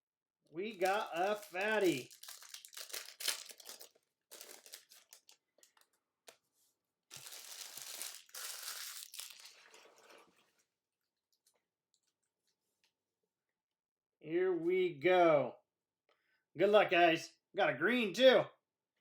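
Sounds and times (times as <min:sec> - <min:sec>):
plastic wrapper crinkling and tearing: 0:00.8 - 0:06.0, 0:07.1 - 0:09.9.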